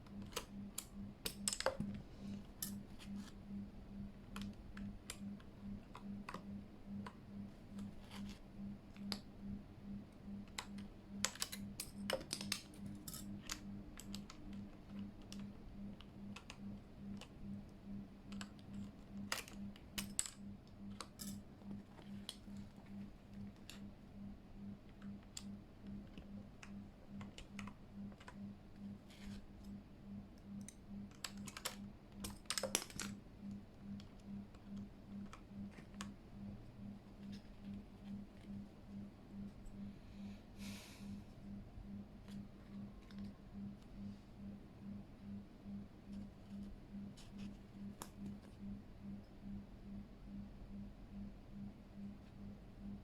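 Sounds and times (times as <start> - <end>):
mechanical keyboard keys clacking: 0.0 - 2.0, 10.4 - 17.4, 30.6 - 36.2
faint pulsing low hum: 0.0 - 53.0.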